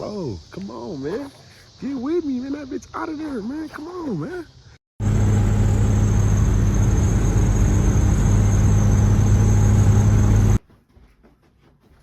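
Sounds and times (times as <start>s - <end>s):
engine running with low hum: 5.0s - 10.6s.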